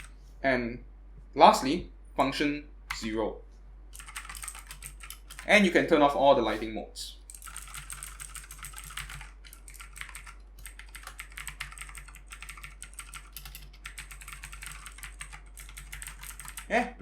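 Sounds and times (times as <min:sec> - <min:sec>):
fast typing on mechanical keyboard: 0:04.0 - 0:05.6, 0:07.3 - 0:16.8.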